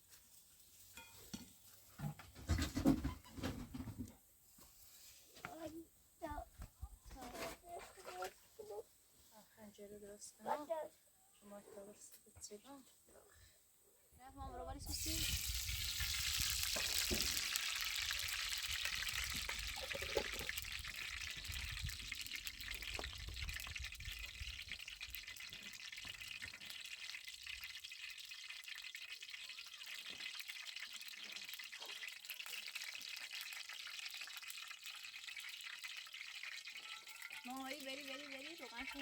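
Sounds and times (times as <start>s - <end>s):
food sizzling in hot oil: 14.9s - 39.0s.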